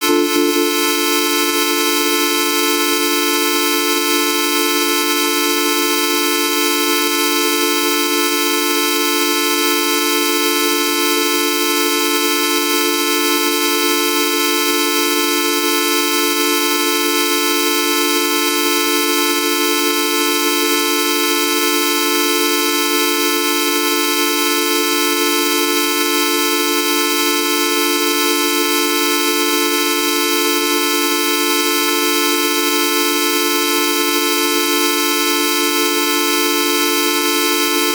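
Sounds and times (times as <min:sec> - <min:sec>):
buzzing electronic drone: 0:00.0 - 0:01.7.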